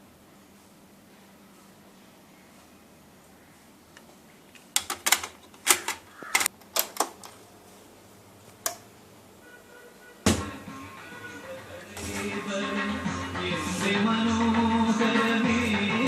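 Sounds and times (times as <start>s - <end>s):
mechanical clicks and knocks: 4.7s - 7.4s.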